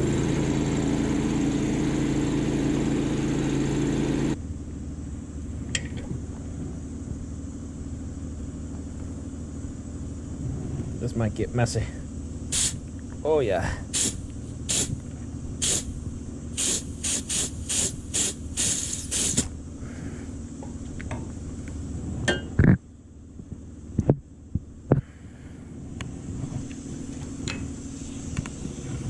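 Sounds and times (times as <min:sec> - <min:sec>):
steady low hum: 0:04.2 - 0:29.0
hissing sprays: 0:12.5 - 0:12.8, 0:13.8 - 0:15.0, 0:15.6 - 0:19.5, 0:26.4 - 0:29.0.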